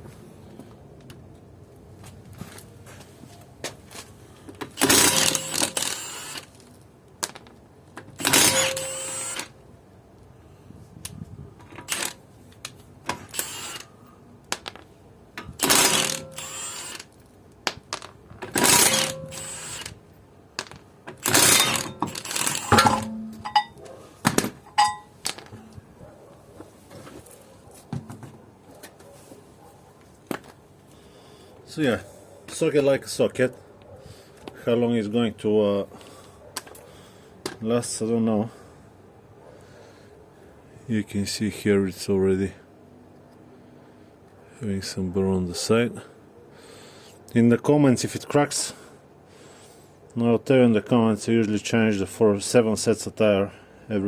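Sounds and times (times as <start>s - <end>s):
impact wrench hammering: 4.8s - 5.8s, 8.2s - 9.1s, 15.6s - 16.6s, 18.5s - 19.7s, 21.2s - 23.8s, 24.7s - 25.7s.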